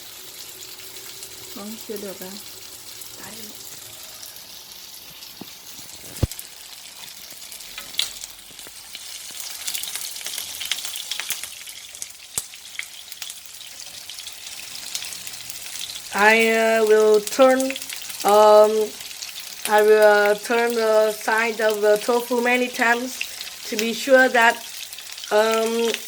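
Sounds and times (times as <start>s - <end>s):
oil crackling spatter: 0.0s - 26.0s
tofu sizzling in oil: 0.0s - 26.0s.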